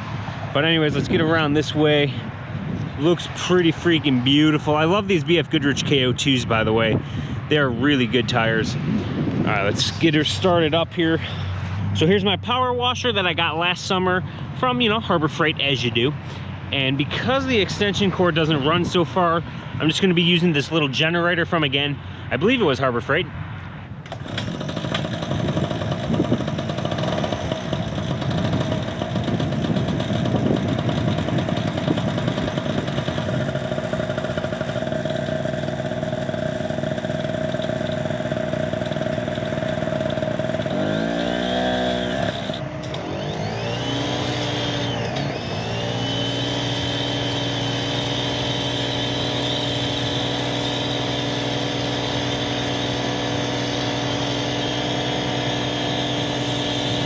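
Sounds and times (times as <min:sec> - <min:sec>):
high steady whine: 0:24.0 - 0:57.0
portable generator running: 0:24.0 - 0:57.0.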